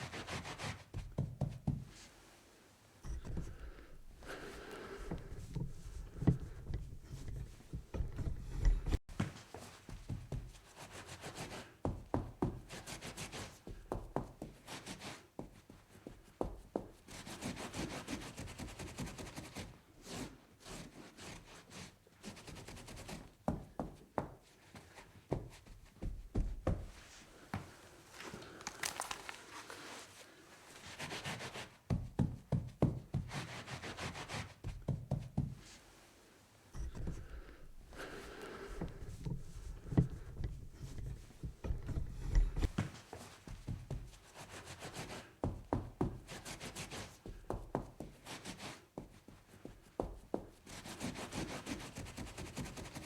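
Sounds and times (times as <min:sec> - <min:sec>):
light knocks and taps: 0:00.9 - 0:02.0, 0:05.0 - 0:10.5
scrubbing on a table top: 0:28.1 - 0:31.8.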